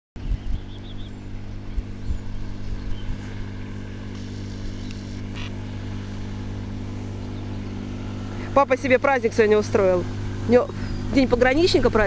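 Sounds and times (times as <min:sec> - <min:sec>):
outboard motor running: 0:00.2 - 0:12.0.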